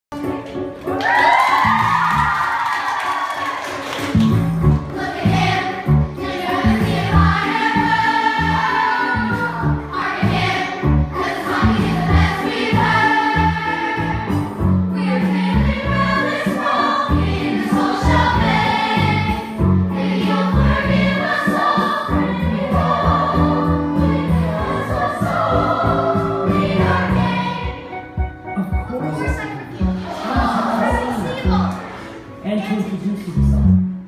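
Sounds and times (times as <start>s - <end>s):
musical accompaniment with bass: 4.0s - 34.0s
group singing in chorus: 4.9s - 28.1s, 30.0s - 31.4s.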